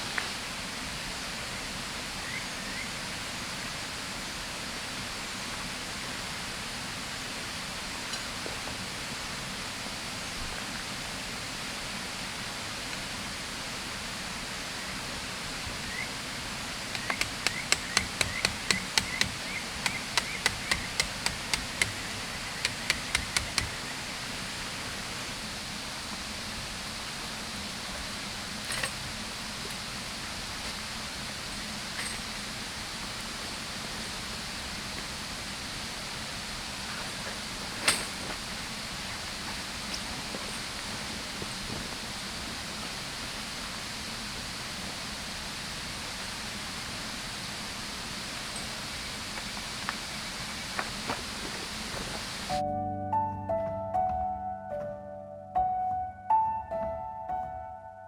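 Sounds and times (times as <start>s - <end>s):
river flowing: 0.0s - 52.6s
hammer strikes: 16.9s - 23.8s.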